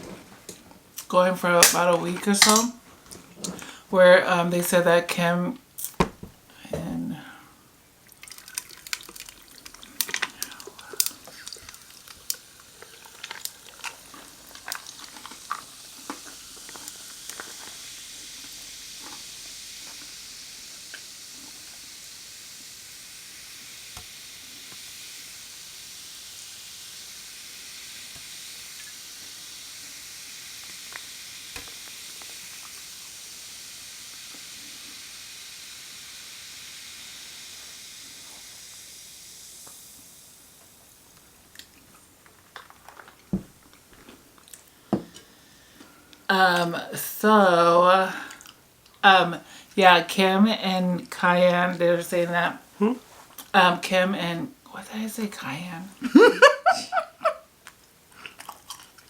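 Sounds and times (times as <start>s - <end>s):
crackling pops: 0.0s - 3.8s, 5.8s - 6.4s, 30.3s - 33.0s
food sizzling in a pan: 1.5s - 3.8s, 8.1s - 46.3s, 56.0s - 57.5s.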